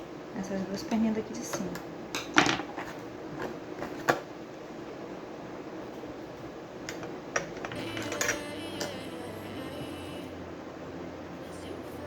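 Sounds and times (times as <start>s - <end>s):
faint steady hiss: 0.0s - 12.0s
faint music: 4.8s - 12.0s.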